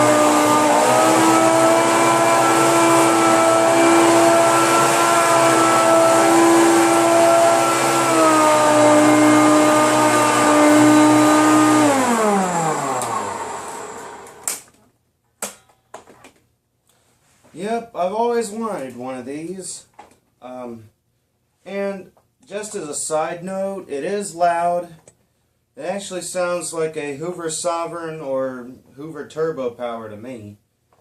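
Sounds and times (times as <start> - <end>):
vacuum cleaner motor whine: 0.0 - 14.6.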